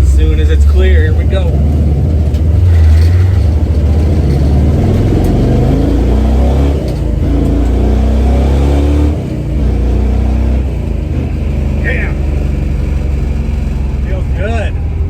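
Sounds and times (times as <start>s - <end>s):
car engine accelerating hard: 0.0s - 15.0s.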